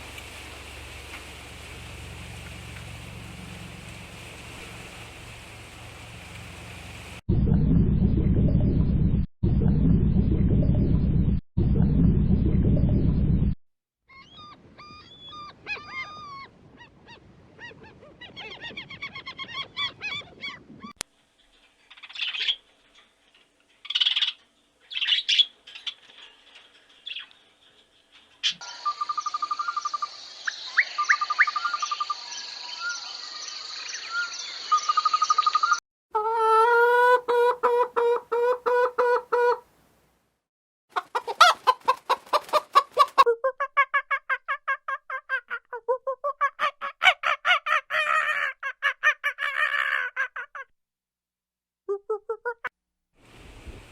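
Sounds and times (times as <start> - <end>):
rapid pulsed fowl calls: 28.6 - 33.1, 40.9 - 45.0
chicken clucks and chirps: 34.7 - 39.6, 40.9 - 50.3.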